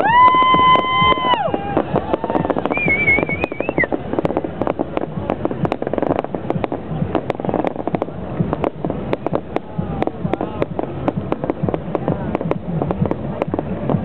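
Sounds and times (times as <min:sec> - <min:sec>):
warbling whistle: 0:00.0 - 0:03.9
fireworks crackling: 0:00.0 - 0:14.0.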